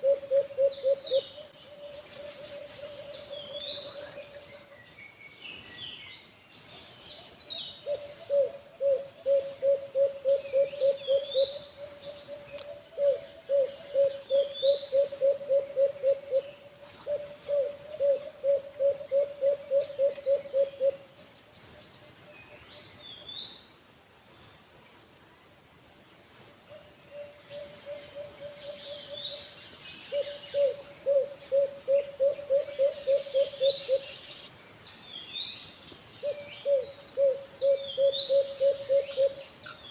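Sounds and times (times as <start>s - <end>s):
dove calling with low rolling notes: 0.0s - 4.8s, 7.8s - 21.1s, 26.7s - 29.5s, 30.1s - 34.3s, 36.2s - 39.9s
small birds chirping: 0.0s - 25.1s, 27.2s - 39.9s.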